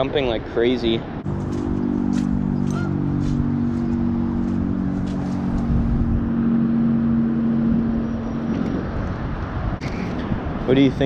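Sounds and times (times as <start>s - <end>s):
motor engine humming: 1.2s - 9.8s.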